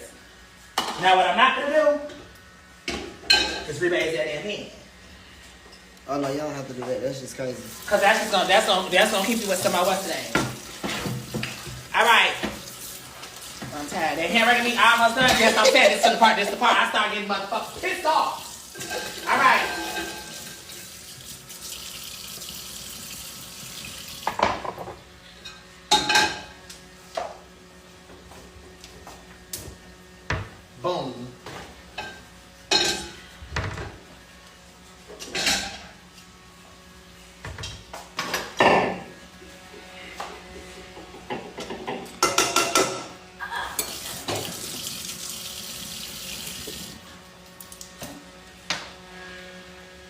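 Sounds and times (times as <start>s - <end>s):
kitchenware clattering: 2.9s - 3.8s, 14.7s - 16.8s, 18.7s - 20.7s, 31.9s - 33.2s, 35.2s - 35.9s, 41.2s - 43.2s
kitchen tap running: 7.7s - 16.2s, 17.5s - 24.6s, 43.8s - 47.0s
dishes clattering: 18.8s - 20.5s, 41.3s - 43.1s
tap running into sink: 43.9s - 45.2s.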